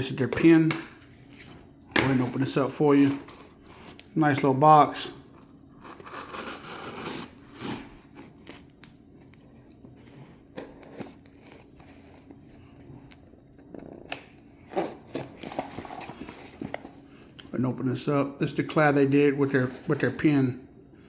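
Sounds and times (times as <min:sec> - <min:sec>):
packaging rustling and tearing: 0:05.2 - 0:17.4.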